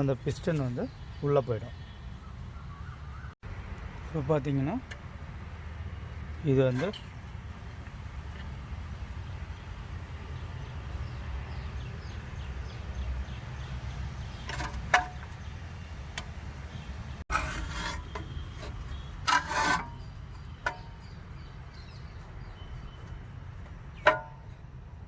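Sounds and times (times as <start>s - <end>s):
metal tools scraping: 6.5s - 7.2s, 17.3s - 21.1s.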